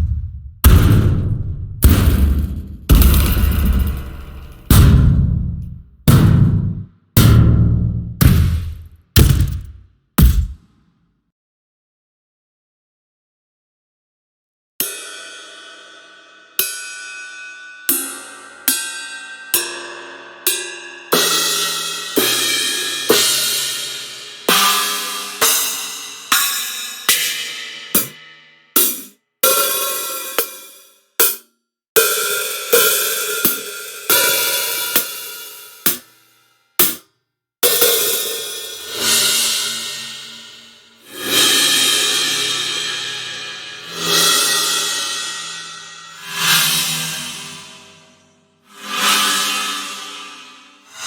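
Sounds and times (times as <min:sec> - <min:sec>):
metallic percussion clangs: 0:00.7 - 0:05.0, 0:16.0 - 0:31.4, 0:32.0 - 0:36.1.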